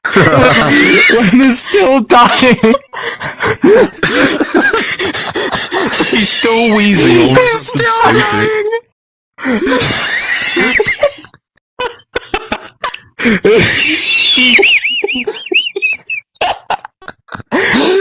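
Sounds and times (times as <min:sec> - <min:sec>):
man laughing and wheezing: 0:00.0 - 0:08.5, 0:09.4 - 0:18.0
high-pitched squealing wheezes: 0:13.5 - 0:16.2.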